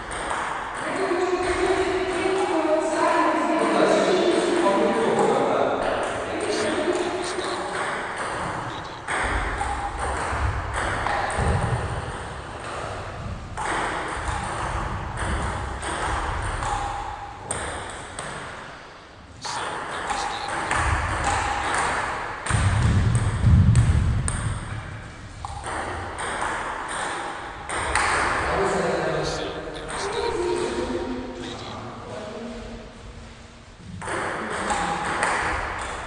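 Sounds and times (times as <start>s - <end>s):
ping-pong balls ticking on tables: 0.0s - 2.6s, 13.6s - 18.4s, 25.4s - 28.5s.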